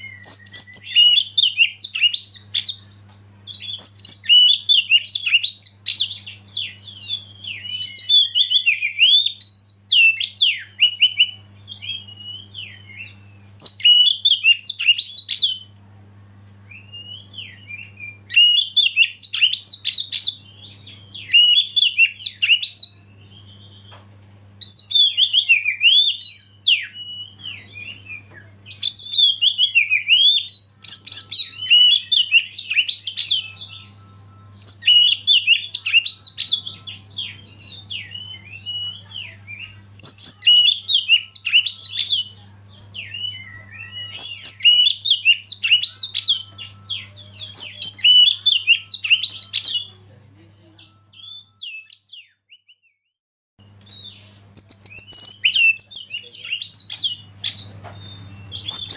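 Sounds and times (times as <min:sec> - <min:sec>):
bird singing whistles and chatters: 0:00.0 - 0:15.7, 0:16.4 - 0:52.9, 0:53.8 - 0:58.9.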